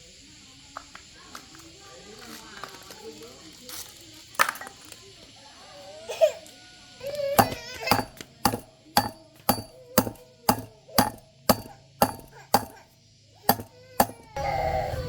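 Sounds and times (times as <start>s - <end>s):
sharp ringing blows: 7.4s - 12.8s, 13.5s - 14.4s.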